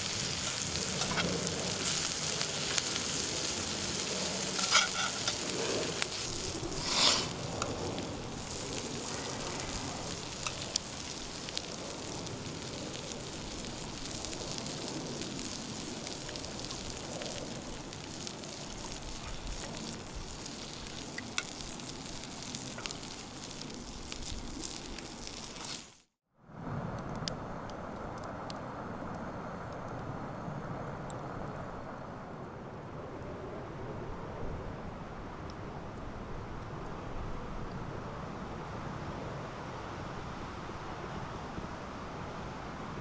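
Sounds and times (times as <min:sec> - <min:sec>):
food sizzling in a pan: 0:00.0 - 0:26.1.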